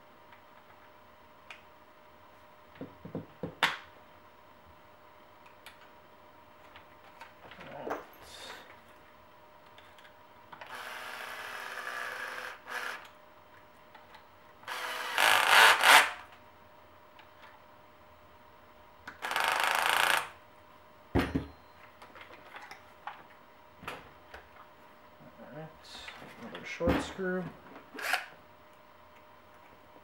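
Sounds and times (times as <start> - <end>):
power driver turning screws: 14.7 - 16.2.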